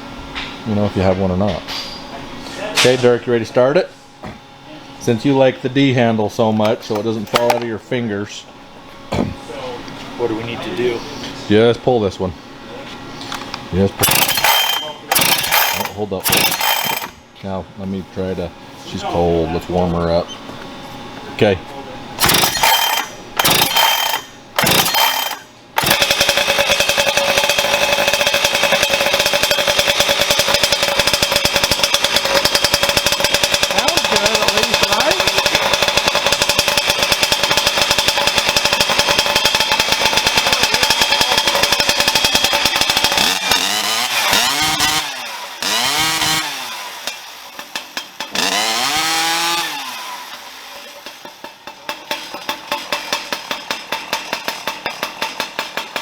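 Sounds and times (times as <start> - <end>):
chainsaw running and revving: 14.0 - 17.2, 22.2 - 51.2.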